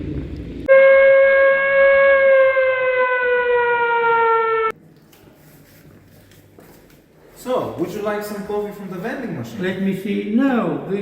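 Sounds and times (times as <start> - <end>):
loud sustained sinking tone: 0.0 - 4.7.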